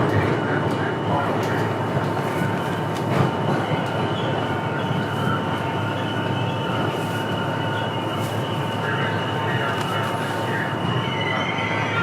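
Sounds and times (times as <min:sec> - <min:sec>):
wheels rumbling and rattling on track: 0:00.0 - 0:12.0
thin steady whine: 0:03.6 - 0:12.0.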